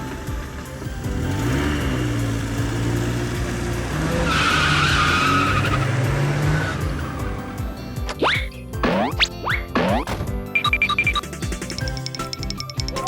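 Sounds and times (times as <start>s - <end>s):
car engine revving: 0.0s - 8.2s
tyre screech: 3.9s - 6.9s.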